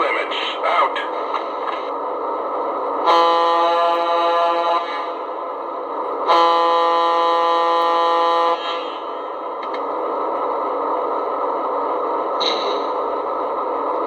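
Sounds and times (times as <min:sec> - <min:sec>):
model train horn blasts: 0:03.0 - 0:05.0, 0:06.3 - 0:09.0.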